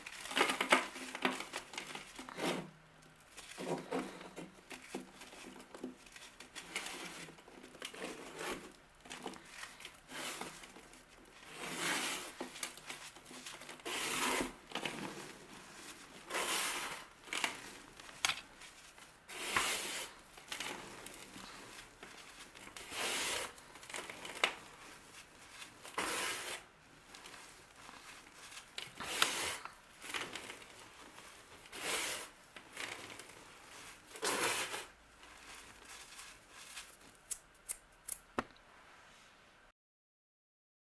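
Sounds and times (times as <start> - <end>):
crisp crunching strokes: 9.4 - 38.3.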